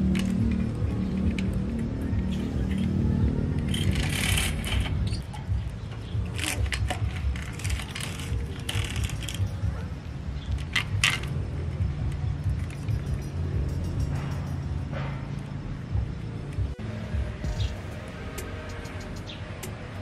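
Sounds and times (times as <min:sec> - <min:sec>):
metallic clinks of bicycle tools: 0:00.0 - 0:15.7.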